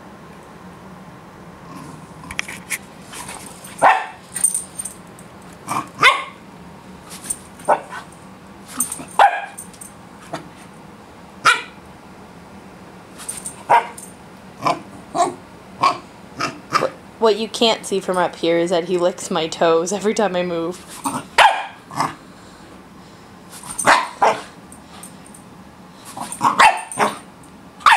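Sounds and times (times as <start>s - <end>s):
puppy barking and yipping: 3.8s - 4.3s, 6.0s - 6.4s, 7.7s - 8.1s, 8.8s - 9.7s, 11.4s - 11.8s, 13.6s - 14.0s, 21.0s - 22.1s, 23.7s - 24.5s, 26.2s - 27.9s.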